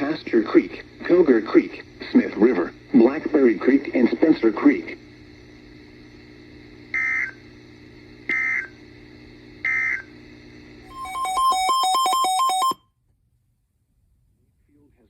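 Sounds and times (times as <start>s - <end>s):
faint steady hum: 0.0s - 15.0s
digital data tone bursts: 10.9s - 12.8s.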